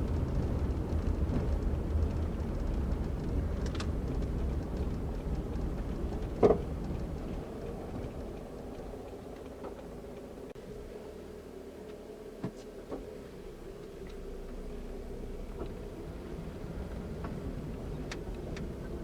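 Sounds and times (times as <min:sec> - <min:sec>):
suspension clunk: 0:00.0 - 0:10.0
car road rumble: 0:00.0 - 0:19.0.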